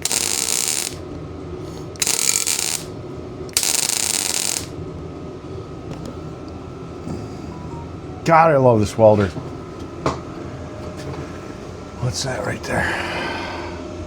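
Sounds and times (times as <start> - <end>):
welder arc crackling: 0.0 - 1.2, 1.8 - 4.8
welder humming: 0.0 - 8.1.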